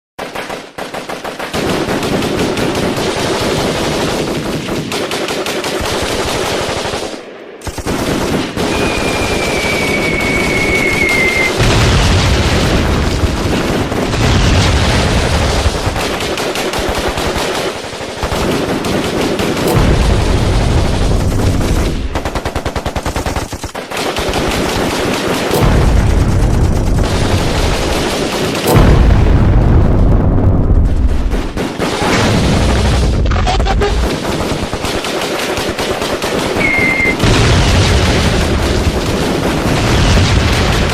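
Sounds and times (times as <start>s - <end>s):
rapid machine-gun and rifle fire: 0.2s - 40.9s
thin falling whistle: 8.7s - 11.6s
deep rumble: 19.7s - 22.2s, 25.6s - 28.0s, 28.7s - 31.6s.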